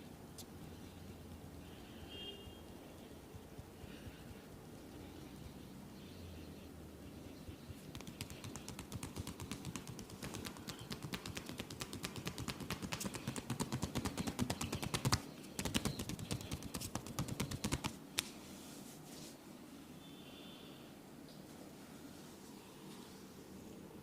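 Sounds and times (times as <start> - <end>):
hands striking body in massage: 7.8 - 18.3.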